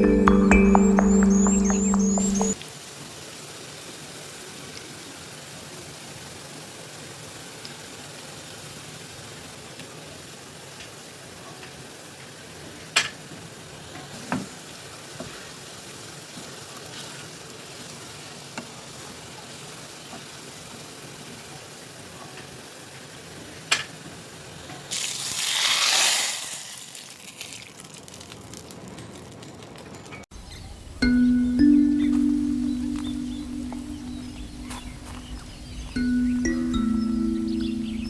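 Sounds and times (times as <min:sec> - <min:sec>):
food sizzling in a pan: 0:24.0 - 0:27.9.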